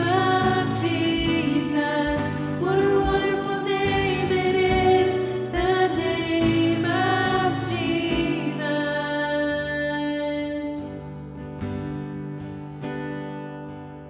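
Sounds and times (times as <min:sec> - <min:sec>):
voices singing held notes: 0:00.0 - 0:10.8.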